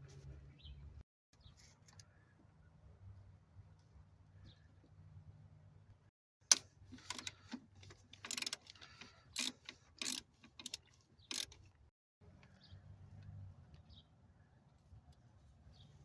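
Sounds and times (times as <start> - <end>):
socket ratchet clicking: 8.2 - 11.6.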